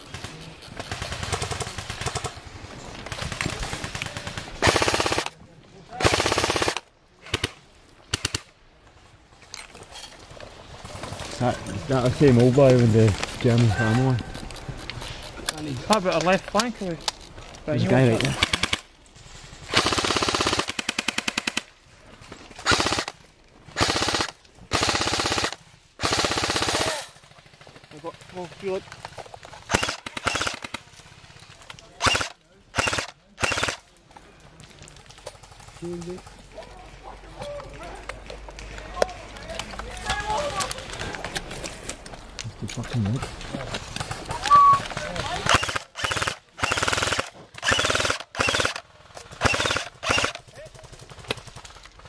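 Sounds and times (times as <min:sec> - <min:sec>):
airsoft guns firing: 0:00.0 - 0:05.4, 0:06.0 - 0:08.5, 0:18.2 - 0:18.9, 0:19.7 - 0:21.7, 0:22.6 - 0:27.8, 0:29.6 - 0:30.9, 0:32.0 - 0:33.9, 0:43.9 - 0:52.0.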